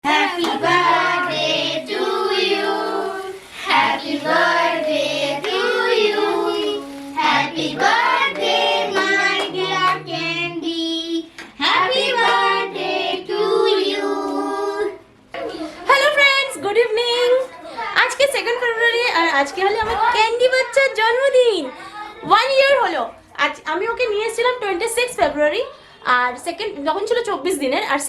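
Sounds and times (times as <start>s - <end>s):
children and women singing: 0.0s - 15.1s.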